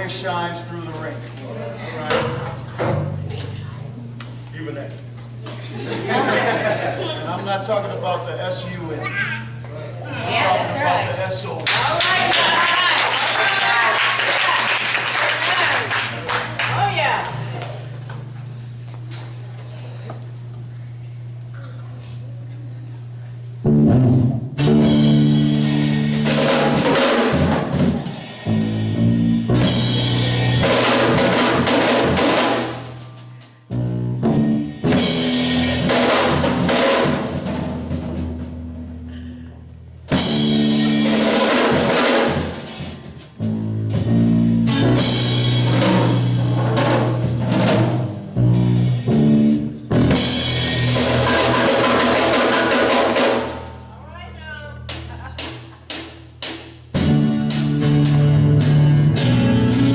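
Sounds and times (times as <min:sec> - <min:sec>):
gospel church band playing: 0:00.0 - 0:59.9
bass drum: 0:23.6 - 0:39.0, 0:40.0 - 0:53.9, 0:54.8 - 0:59.9
snare drum: 0:30.0 - 0:33.2, 0:40.5 - 0:43.1, 0:51.0 - 0:53.7.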